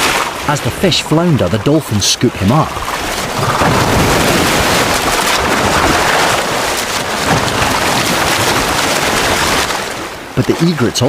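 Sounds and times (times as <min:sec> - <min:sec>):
dolphins splashing in water: 0:02.4 - 0:10.8.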